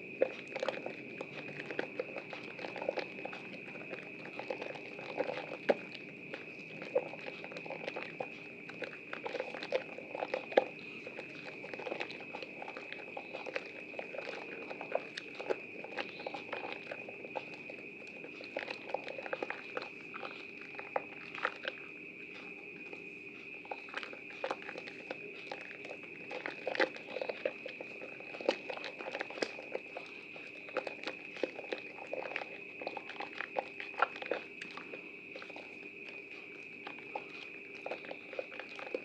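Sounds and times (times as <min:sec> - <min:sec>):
wet soap squelching: 0:00.0 - 0:39.0.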